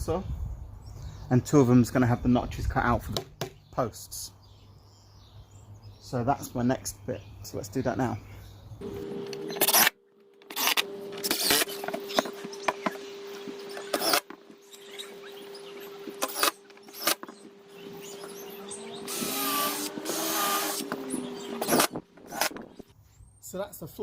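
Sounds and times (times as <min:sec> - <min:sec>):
power tools humming: 0:08.8 - 0:22.9.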